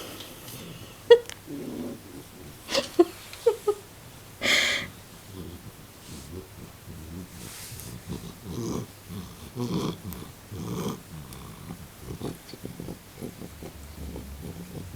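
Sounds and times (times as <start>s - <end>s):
cat snuffling and snorting: 4.5s - 14.9s.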